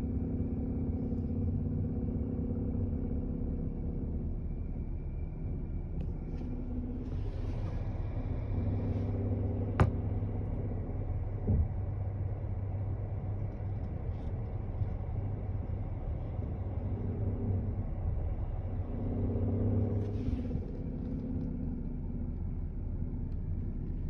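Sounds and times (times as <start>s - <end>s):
droning tone: 0.0s - 24.0s
car engine idling: 0.2s - 24.0s
dull thump: 9.8s - 10.1s.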